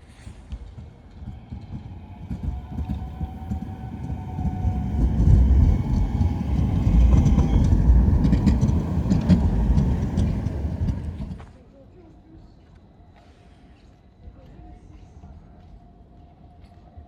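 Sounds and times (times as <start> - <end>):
tram wheel-on-rail rumble: 0.1 - 11.6.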